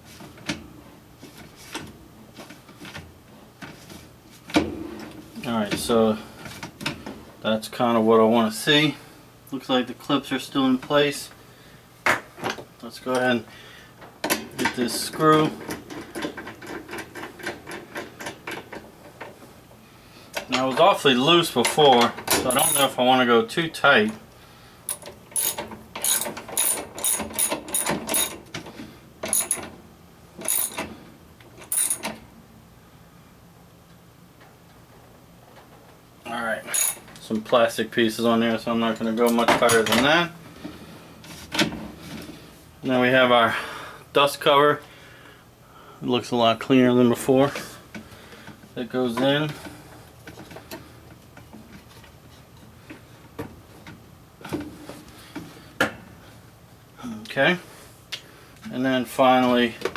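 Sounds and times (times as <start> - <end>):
ratchet wrench clicking: 22.5 - 22.9, 24.9 - 28.4, 29.3 - 29.6, 30.4 - 30.8, 31.7 - 32.0, 36.7 - 37.0.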